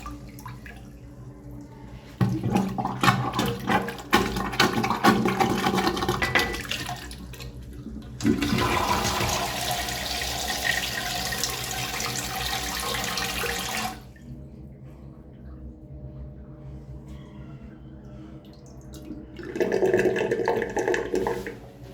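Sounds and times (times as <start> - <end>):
urinal flushing: 0.0 - 14.3, 18.4 - 21.9.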